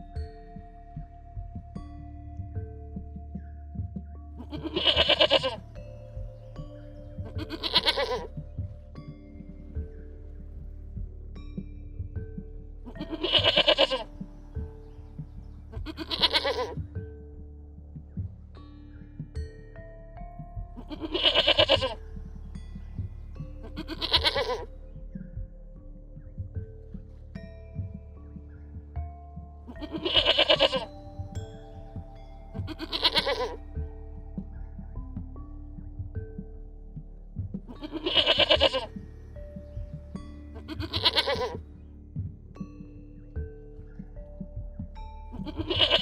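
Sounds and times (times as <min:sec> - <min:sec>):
background music: 0:00.0 - 0:46.0
livestock bleating: 0:04.4 - 0:05.6, 0:07.3 - 0:08.3, 0:12.9 - 0:14.1, 0:15.8 - 0:16.8, 0:20.8 - 0:22.0, 0:23.7 - 0:24.7, 0:29.7 - 0:30.9, 0:32.7 - 0:33.6, 0:37.7 - 0:38.9, 0:40.6 - 0:41.6, 0:45.4 - 0:46.0.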